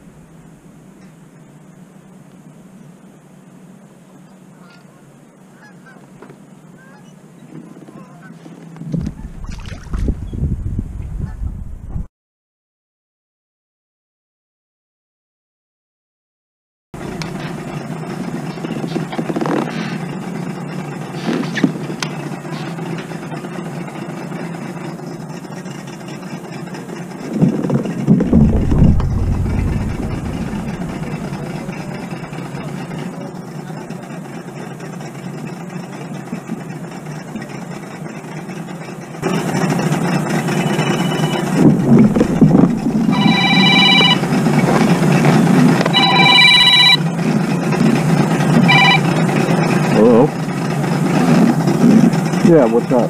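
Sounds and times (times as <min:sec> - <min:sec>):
steady low hum: 0:00.0 - 0:04.3, 0:27.3 - 0:33.5, 0:41.4 - 0:44.3
low rumble: 0:08.9 - 0:12.1, 0:27.3 - 0:33.2, 0:41.5 - 0:44.2
mobile phone ringing: 0:40.6 - 0:41.5, 0:43.0 - 0:44.3, 0:45.9 - 0:47.0, 0:48.6 - 0:49.2.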